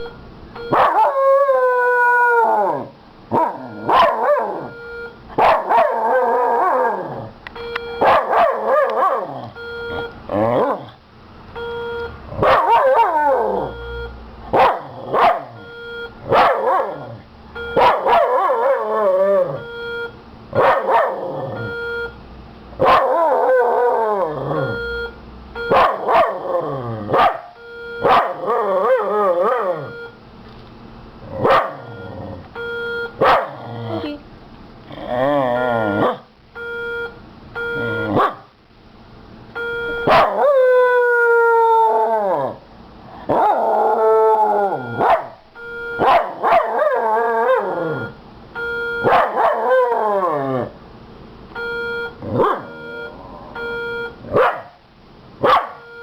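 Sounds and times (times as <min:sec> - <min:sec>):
fire alarm beeping: 0:00.0 - 0:01.0, 0:03.6 - 0:05.2, 0:07.6 - 0:08.2, 0:09.6 - 0:10.2, 0:11.6 - 0:12.2, 0:13.7 - 0:14.2, 0:15.6 - 0:16.2, 0:17.5 - 0:18.2, 0:19.4 - 0:20.2, 0:21.5 - 0:22.2, 0:24.6 - 0:26.2, 0:27.6 - 0:28.5, 0:29.3 - 0:30.2, 0:31.8 - 0:33.2, 0:35.6 - 0:38.2, 0:39.6 - 0:40.2, 0:44.7 - 0:46.2, 0:47.8 - 0:49.4, 0:51.6 - 0:54.3, 0:55.8 - 0:56.0
dog barking and howling: 0:00.7 - 0:04.7, 0:05.4 - 0:07.3, 0:08.0 - 0:09.6, 0:12.4 - 0:13.7, 0:14.5 - 0:15.6, 0:16.3 - 0:17.2, 0:17.8 - 0:19.6, 0:20.6 - 0:21.7, 0:22.8 - 0:24.8, 0:25.7 - 0:29.9, 0:31.3 - 0:31.9, 0:33.2 - 0:33.8, 0:38.1 - 0:38.5, 0:40.0 - 0:42.6, 0:43.3 - 0:45.4, 0:46.0 - 0:48.1, 0:49.0 - 0:50.8, 0:52.2 - 0:52.8, 0:54.3 - 0:54.8, 0:55.4 - 0:55.8.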